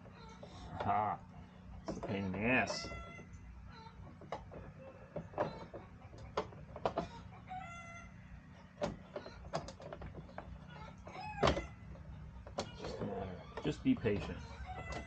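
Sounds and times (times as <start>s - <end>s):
plastic parts clicking and knocking: 1.8s - 3.0s, 4.1s - 7.2s, 8.8s - 10.6s, 11.3s - 15.0s.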